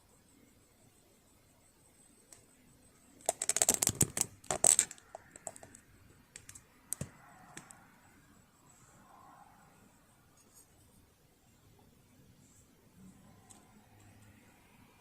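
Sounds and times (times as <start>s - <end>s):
small hard objects clicking and rattling: 3.2s - 7.8s.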